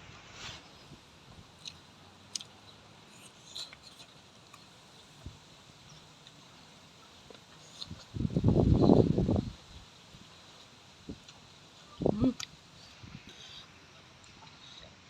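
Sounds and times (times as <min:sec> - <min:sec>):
chewing: 0:01.6 - 0:04.8, 0:07.2 - 0:08.2.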